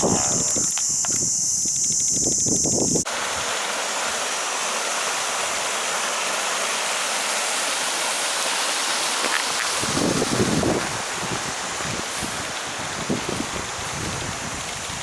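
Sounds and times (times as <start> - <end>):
wind rumble on microphone: 0.0 - 3.1, 9.7 - 15.0
running water rushing: 2.2 - 15.0.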